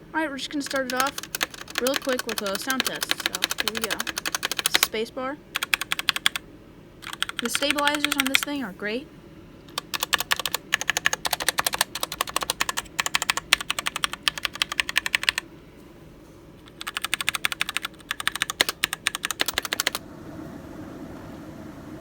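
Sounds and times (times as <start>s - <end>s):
mechanical keyboard clicks: 0.6s - 4.9s, 5.6s - 6.4s, 7.0s - 8.5s, 9.7s - 15.4s, 16.6s - 20.0s.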